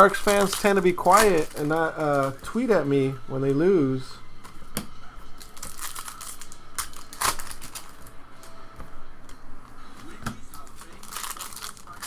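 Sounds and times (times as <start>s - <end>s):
card pack wrappers crinkling: 0.0s - 3.5s, 4.5s - 8.6s, 9.3s - 12.0s.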